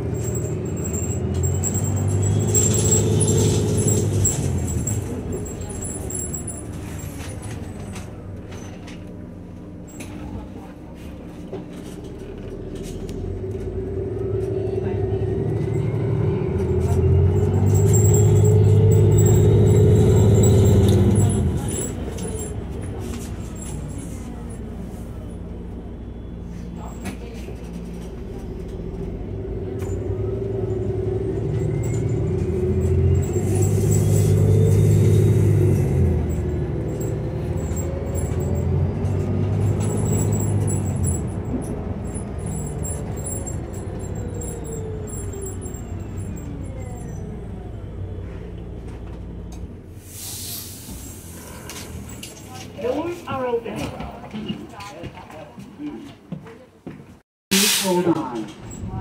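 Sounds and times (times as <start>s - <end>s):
bus engine drone: 0.0s - 56.2s, 57.5s - 59.0s
air brake hiss: 50.0s - 51.6s, 57.5s - 58.1s.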